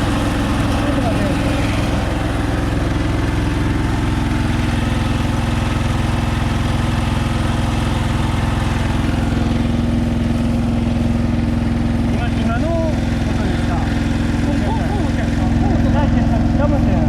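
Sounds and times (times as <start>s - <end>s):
harvester running: 0.0s - 17.0s.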